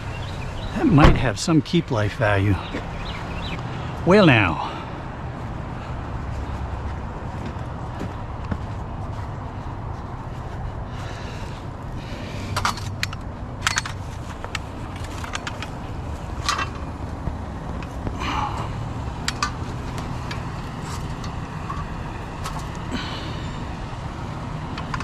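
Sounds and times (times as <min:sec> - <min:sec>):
vehicle engine idling: 0:00.0 - 0:25.0
clinks of hard items handled: 0:12.5 - 0:15.7, 0:16.4 - 0:16.9.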